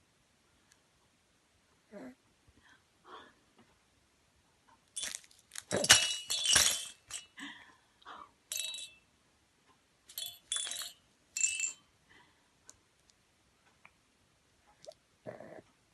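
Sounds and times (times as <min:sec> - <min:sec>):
hard objects clattering: 0:05.0 - 0:07.4, 0:08.5 - 0:09.0, 0:10.1 - 0:11.8.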